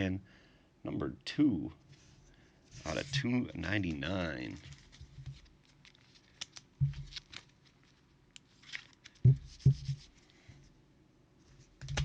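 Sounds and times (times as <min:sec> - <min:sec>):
trading cards rustling and sliding: 0:02.7 - 0:10.4.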